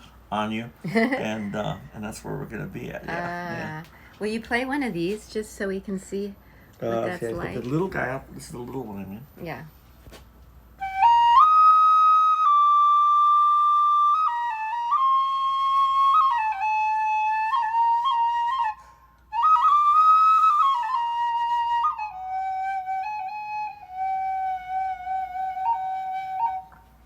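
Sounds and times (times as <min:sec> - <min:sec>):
flute melody: 0:10.8 - 0:27.0.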